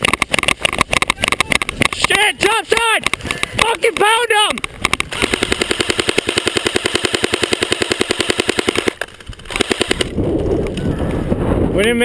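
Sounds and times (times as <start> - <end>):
airsoft gun firing bursts: 0.0 - 10.2.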